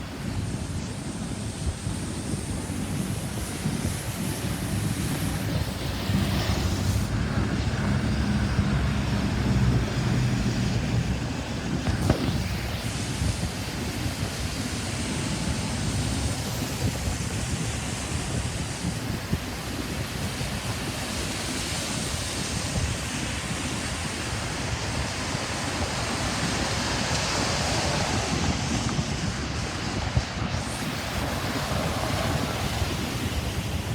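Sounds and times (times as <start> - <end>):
wind on microphone: 0.0 - 33.9
road traffic rushing past: 4.4 - 13.0
loud vehicle passing: 5.8 - 11.8.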